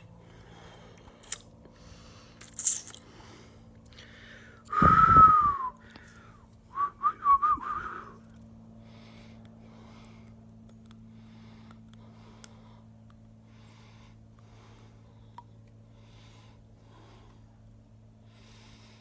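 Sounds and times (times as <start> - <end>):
person whistling through lips: 4.7 - 5.8, 6.7 - 8.2.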